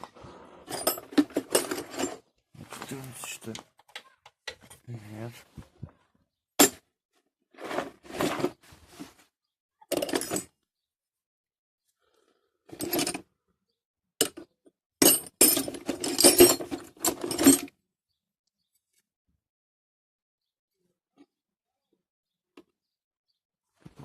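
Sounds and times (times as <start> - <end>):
metal wrenches clattering: 0.7 - 2.2, 9.9 - 10.5, 12.7 - 13.2, 14.2 - 17.7.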